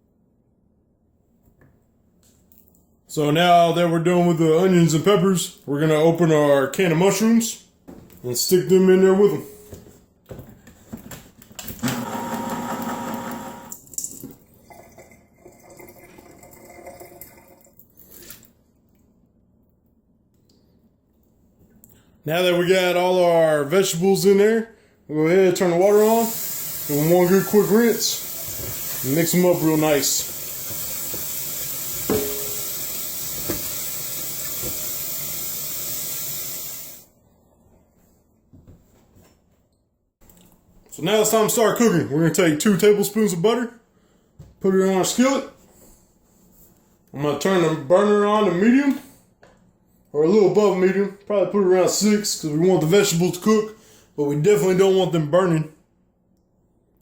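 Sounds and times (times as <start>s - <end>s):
water dripping and draining: 13.6s - 18.5s, 26.0s - 37.0s
liquid pouring and splashing: 13.8s - 18.5s, 26.0s - 37.0s.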